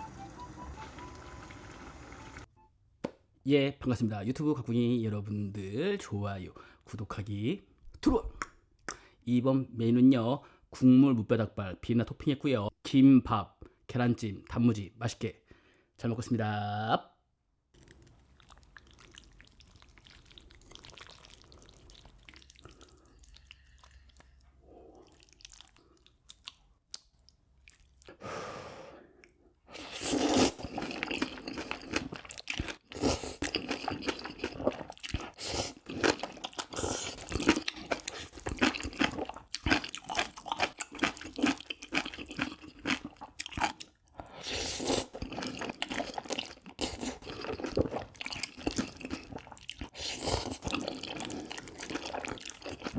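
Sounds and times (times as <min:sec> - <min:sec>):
chewing and crunching food: 0:17.8 - 0:28.2, 0:29.2 - 0:52.9.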